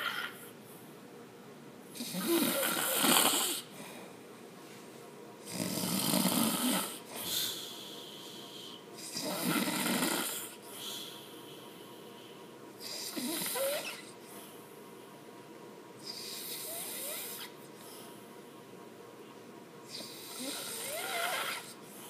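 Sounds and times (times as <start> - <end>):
loud snoring: 0.0 - 0.4, 2.0 - 3.7, 5.4 - 7.1, 9.0 - 10.6, 12.8 - 14.0, 16.0 - 17.5, 19.9 - 21.8.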